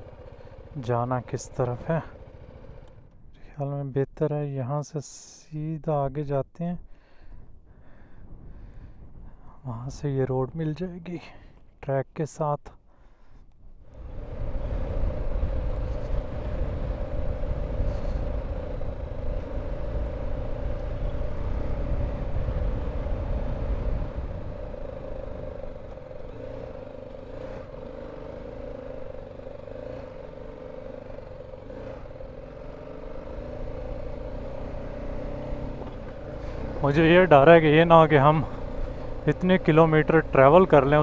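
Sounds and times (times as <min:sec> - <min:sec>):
motorcycle engine riding off-road: 0:00.0 - 0:03.6, 0:13.1 - 0:41.0.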